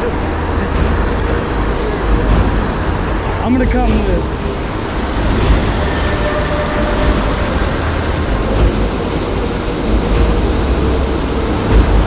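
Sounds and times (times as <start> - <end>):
river water rushing: 0.0 - 12.0
wind rumbling on microphone: 0.0 - 12.0.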